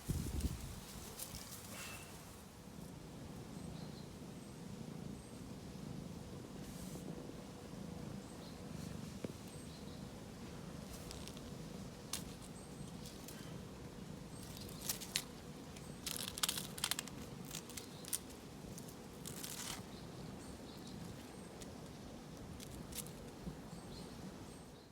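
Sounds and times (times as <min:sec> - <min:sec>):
rustling and crunching: 0:00.0 - 0:02.4, 0:10.7 - 0:23.6
low outdoor hum: 0:00.0 - 0:24.9.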